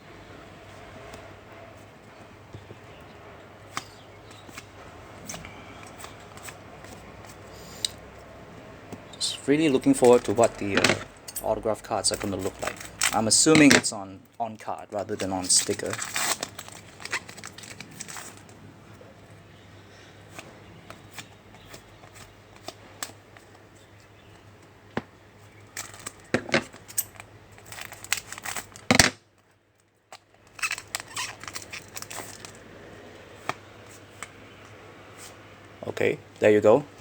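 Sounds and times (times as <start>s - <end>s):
cards rustling and clicking: 3.6s - 13.9s, 14.6s - 18.6s, 20.0s - 29.1s, 30.1s - 35.8s.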